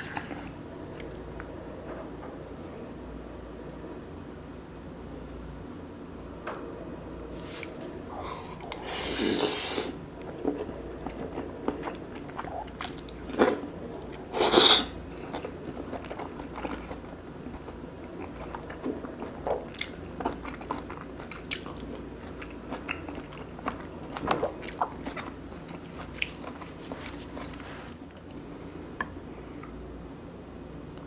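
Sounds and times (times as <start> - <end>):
close chewing and biting: 10.2 - 27.7.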